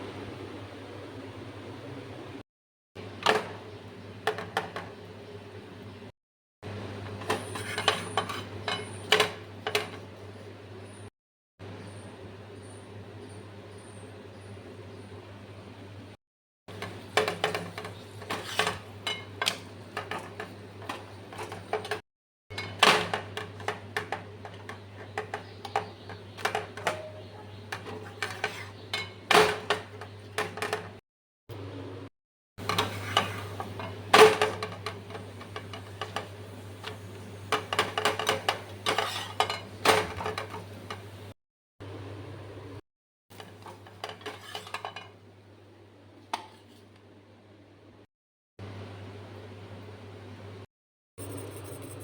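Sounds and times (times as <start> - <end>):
steady low hum: 0.0 - 2.4, 48.6 - 52.0
utensils clinking against pots: 7.1 - 10.0, 16.7 - 30.9, 32.6 - 41.1, 43.4 - 45.2.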